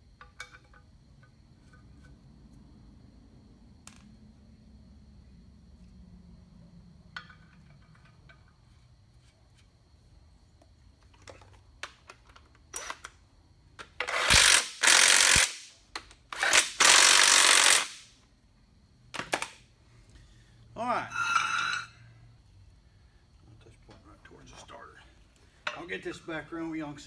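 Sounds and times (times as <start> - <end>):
power tool spinning nuts: 12.8 - 13.1, 14.0 - 15.7, 16.3 - 18.1.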